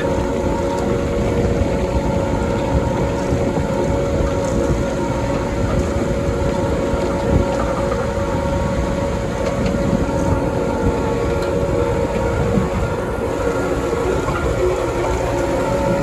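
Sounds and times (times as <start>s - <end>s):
diesel machine rumbling with whine: 0.0s - 16.0s.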